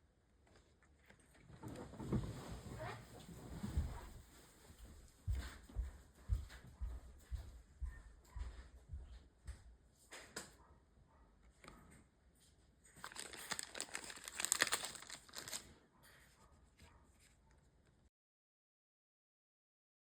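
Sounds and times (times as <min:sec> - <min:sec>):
foil wrapper crinkling: 0:12.9 - 0:15.7.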